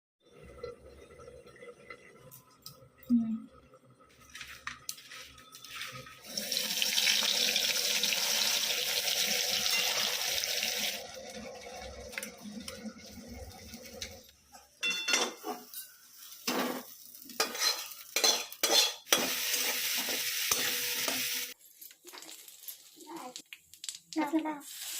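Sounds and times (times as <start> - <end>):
dishes clinking: 9.6 - 10.3, 14.8 - 19.4
utensils clattering: 14.8 - 21.5.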